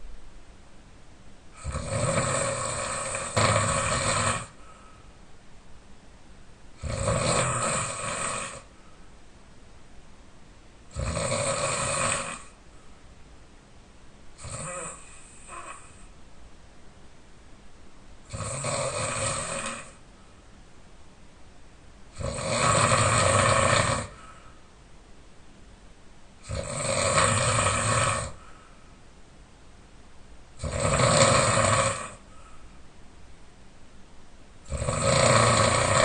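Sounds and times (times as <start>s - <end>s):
man snoring heavily: 1.6s - 4.7s, 6.8s - 8.7s, 10.9s - 12.6s, 14.4s - 16.0s, 18.3s - 20.0s, 22.2s - 24.4s, 26.4s - 28.5s, 30.6s - 32.4s, 34.7s - 36.0s.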